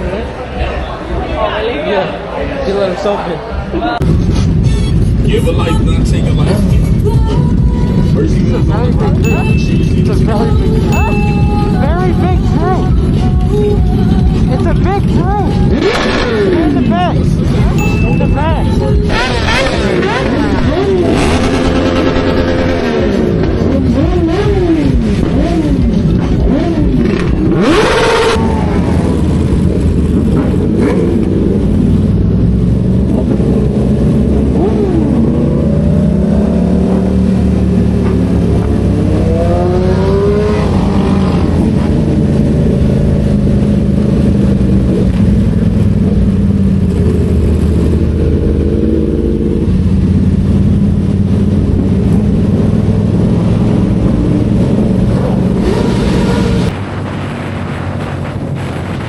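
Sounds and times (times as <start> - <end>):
car engine revving: 14.0 - 59.0.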